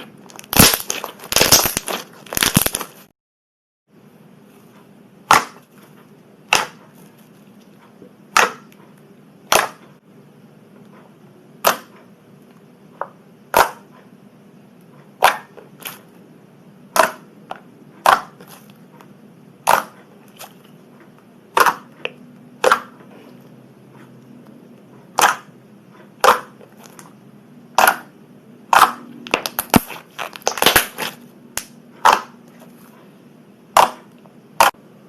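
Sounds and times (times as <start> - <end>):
slime squeezed and popping: 0.3 - 3.0, 28.8 - 31.2.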